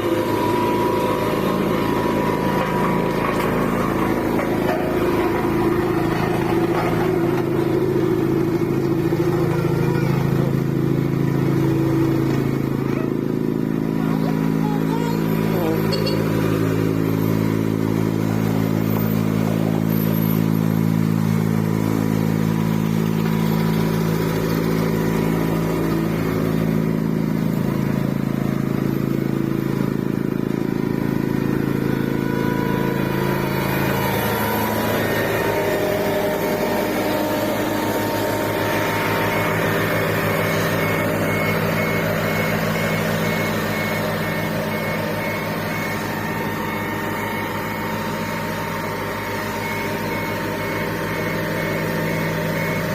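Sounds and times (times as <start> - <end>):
road roller diesel engine running: 0.0 - 52.9
faint high repeating beep: 15.6 - 16.3.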